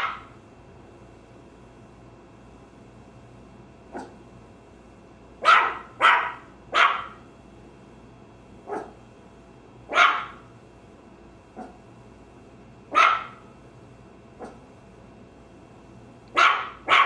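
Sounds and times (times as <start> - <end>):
puppy barking: 0.0 - 0.4, 3.9 - 4.2, 5.4 - 7.3, 8.6 - 9.0, 9.9 - 10.5, 11.6 - 11.8, 12.9 - 13.5, 14.4 - 14.6, 16.3 - 17.0.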